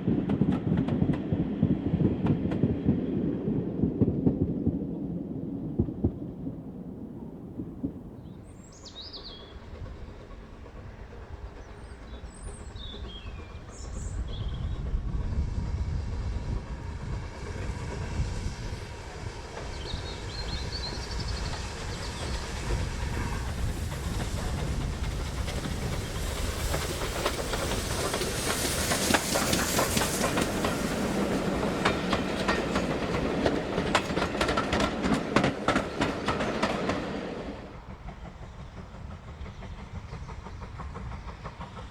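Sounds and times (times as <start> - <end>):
train wheels clicking on rails: 0.0 - 4.9, 7.7 - 41.9
train rumble: 0.0 - 41.9
birds chirping: 8.1 - 10.2, 10.8 - 14.9, 19.4 - 23.5.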